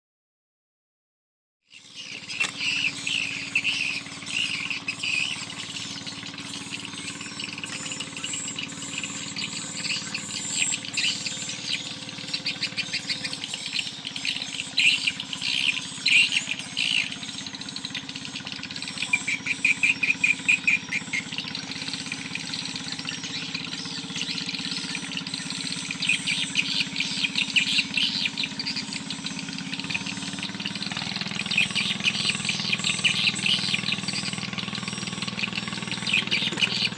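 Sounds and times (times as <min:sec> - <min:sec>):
birds chirping in trills: 0:01.7 - 0:36.9.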